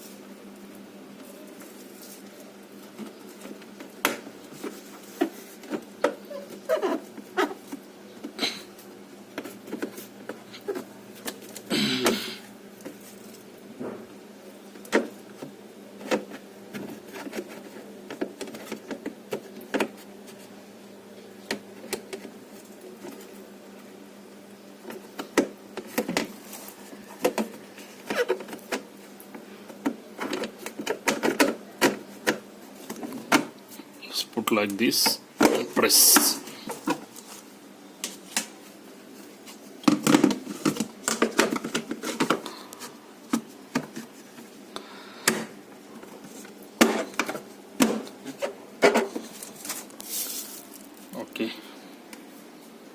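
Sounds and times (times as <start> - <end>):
hissy rustle: 49.3 - 51.2.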